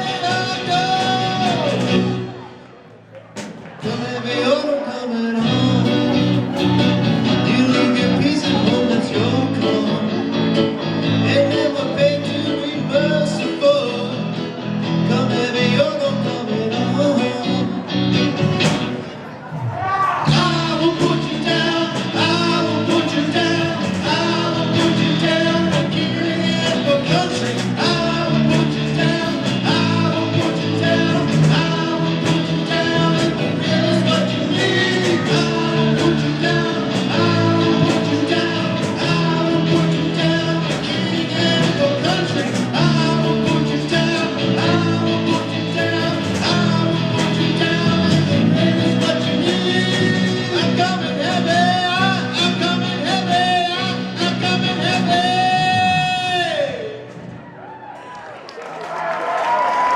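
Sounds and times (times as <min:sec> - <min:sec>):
person singing: 0:00.0 - 0:02.5, 0:03.8 - 0:18.7, 0:20.0 - 0:57.1
live rock band playing: 0:00.0 - 0:02.7, 0:03.3 - 0:19.6, 0:20.2 - 0:57.5
steady drum beat: 0:20.1 - 0:55.4.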